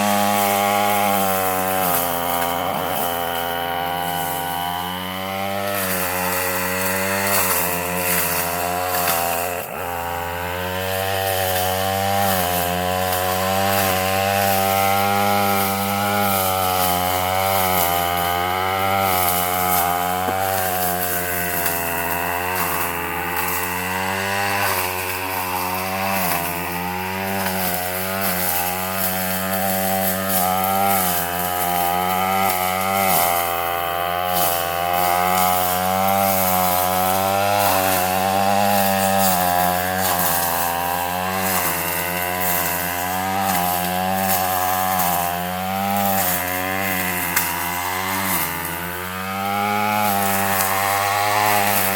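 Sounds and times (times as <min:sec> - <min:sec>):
weed eater engine cutting brush: 0:00.0 - 0:51.9.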